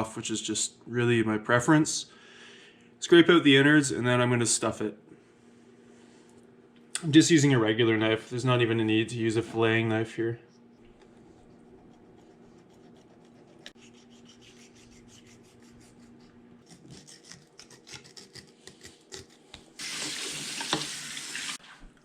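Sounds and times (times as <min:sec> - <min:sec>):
low steady hum: 0:00.0 - 0:18.6
knife scraping through fish: 0:10.5 - 0:19.5.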